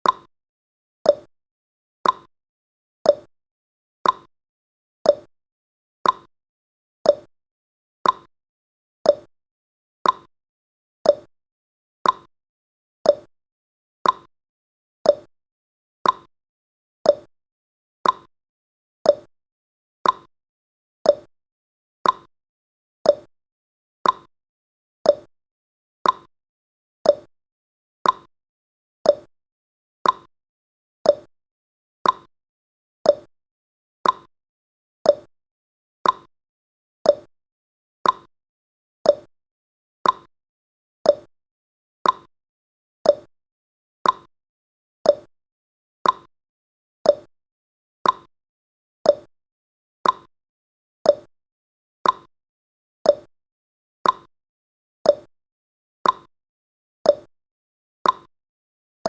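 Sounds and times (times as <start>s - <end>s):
clock ticking: 34.0s - 34.3s, 40.0s - 40.3s, 46.0s - 46.3s.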